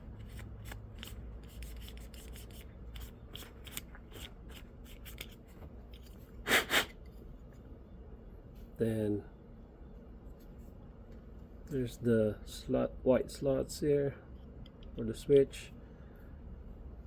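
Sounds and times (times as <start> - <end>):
short puffs of air: 6.4 - 7.0.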